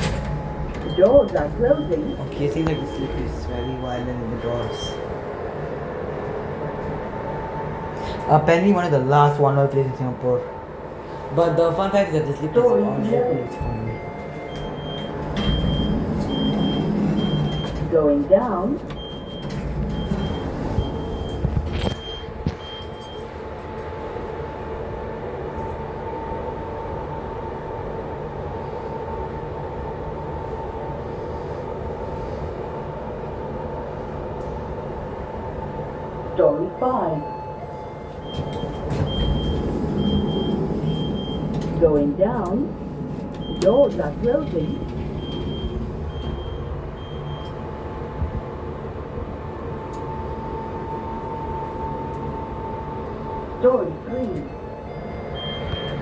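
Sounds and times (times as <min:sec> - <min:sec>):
lift running rumble and hum: 0:00.0 - 0:56.0
steady lift whine: 0:00.0 - 0:56.0.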